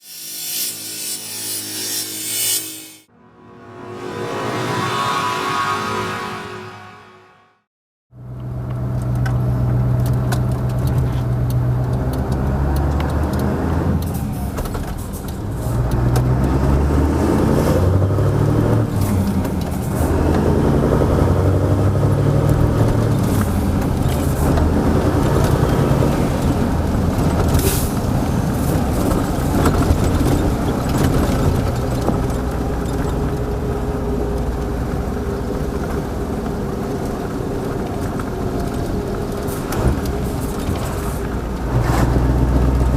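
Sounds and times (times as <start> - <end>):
short hiss: 0.0 - 3.1.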